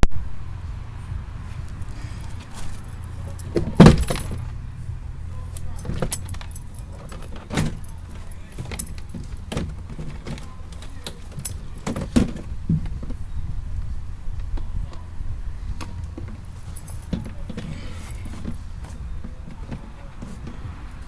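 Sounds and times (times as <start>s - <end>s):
steady low hum: 0.0s - 21.0s
hand tools clicking and knocking: 1.6s - 4.6s, 5.2s - 13.2s, 15.8s - 21.0s
plastic door trim being pried: 3.4s - 4.5s.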